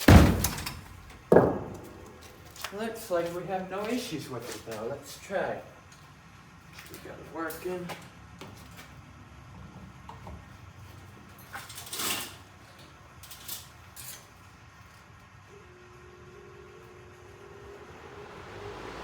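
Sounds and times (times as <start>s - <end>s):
electric fan humming: 15.2s - 19.0s.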